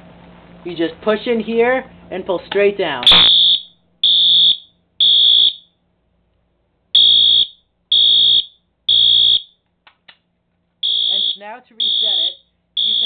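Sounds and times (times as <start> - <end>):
fire alarm horn blasts: 3.1 - 5.7, 7.0 - 9.6, 10.8 - 13.0.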